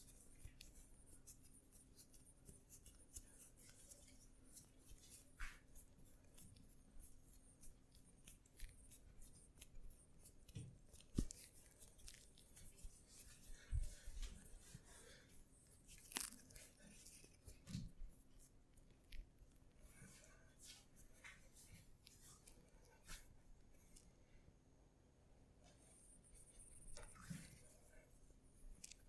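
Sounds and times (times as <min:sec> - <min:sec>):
hands rubbing skin and hair: 0:00.0 - 0:19.3.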